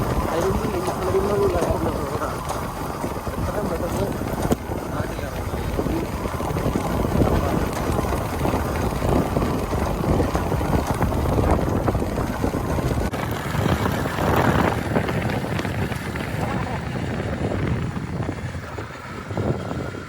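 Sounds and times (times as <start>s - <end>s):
motorcycle engine running: 0.0s - 20.0s
wind buffeting microphone: 0.0s - 20.0s.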